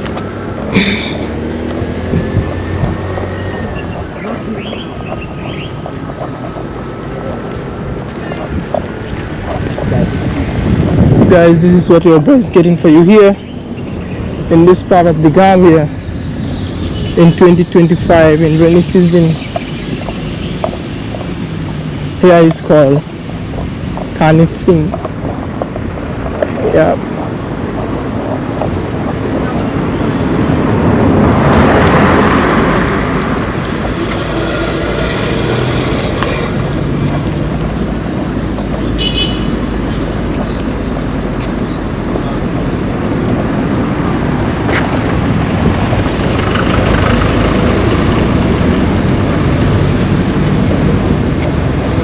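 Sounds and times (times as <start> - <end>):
vehicle passing close by: 0.0 - 11.6, 27.2 - 41.3, 41.9 - 52.0
street traffic noise: 0.0 - 52.0.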